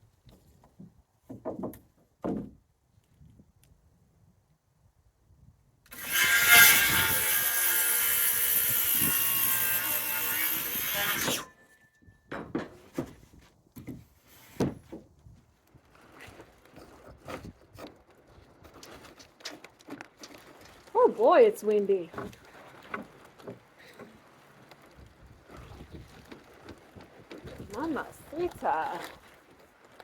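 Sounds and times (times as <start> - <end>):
power saw cutting wood: 5.9 - 11.6
knocks and clatters: 12.3 - 13.2.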